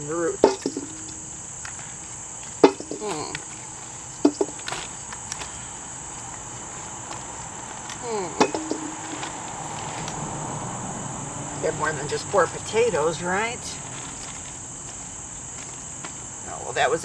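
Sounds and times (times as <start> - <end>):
handling knocks and taps: 0.0 - 10.2
crickets chirping: 0.0 - 17.0.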